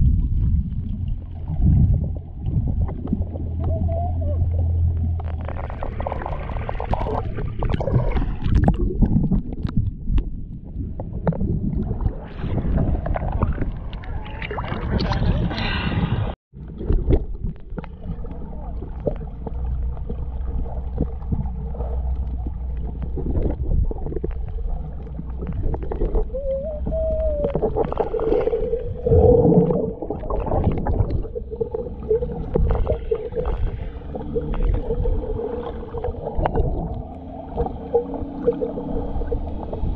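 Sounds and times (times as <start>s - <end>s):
water splashing and gurgling: 0.0s - 39.9s.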